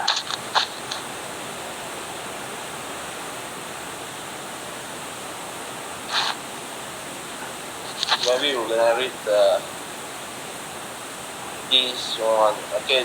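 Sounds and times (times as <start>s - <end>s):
sharp bursts: 0.0s - 1.1s, 6.1s - 6.4s, 7.8s - 9.2s
heavy rain hissing: 0.0s - 13.0s.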